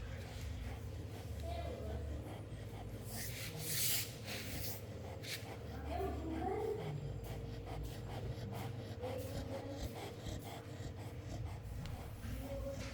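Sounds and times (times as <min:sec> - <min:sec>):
dog snoring: 0:05.7 - 0:12.7.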